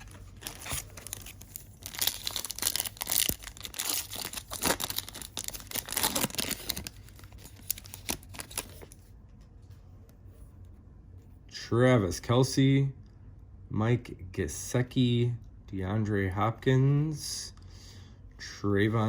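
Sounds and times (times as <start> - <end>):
card pack wrapper tearing and crinkling: 0.0 - 9.0.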